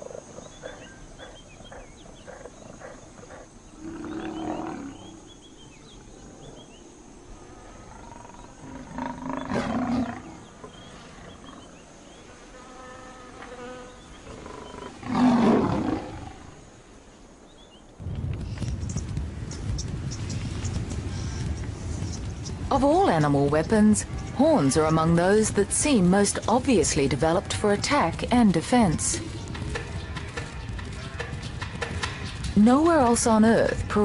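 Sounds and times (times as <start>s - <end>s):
faint high chirping calls: 0.0s - 7.0s.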